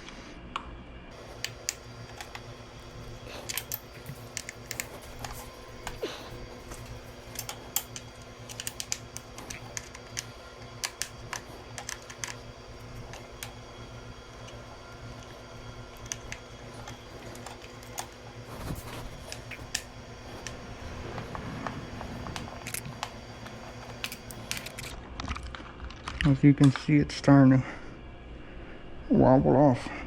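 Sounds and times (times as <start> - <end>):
steady low hum: 0.0 - 30.0
hand tools clicking and tapping: 1.1 - 24.9.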